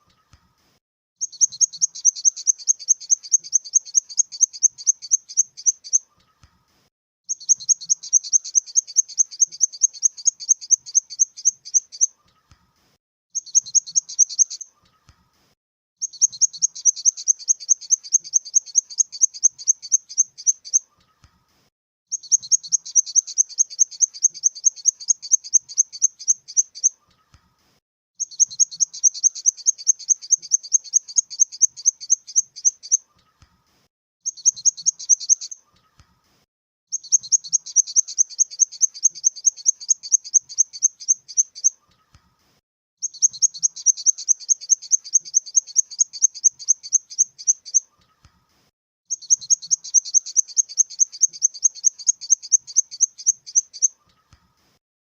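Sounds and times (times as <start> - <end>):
grasshopper chirping pulses: 1.2 - 5.8, 7.3 - 11.9, 49.1 - 53.9.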